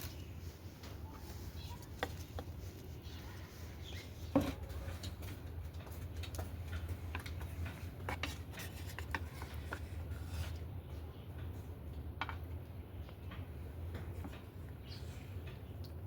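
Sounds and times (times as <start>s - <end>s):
scraping and rubbing: 0.0s - 5.3s, 7.1s - 10.6s.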